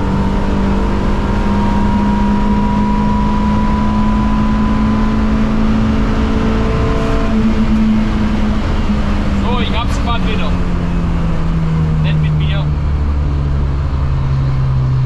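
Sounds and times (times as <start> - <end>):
car engine pulling hard: 0.0 - 15.0
road and wind noise: 0.0 - 15.0.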